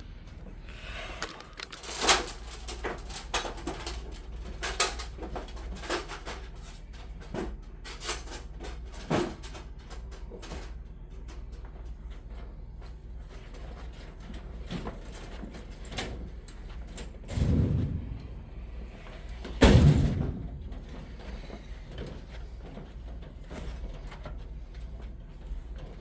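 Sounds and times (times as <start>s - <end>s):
loud bang: 17.3s - 21.3s.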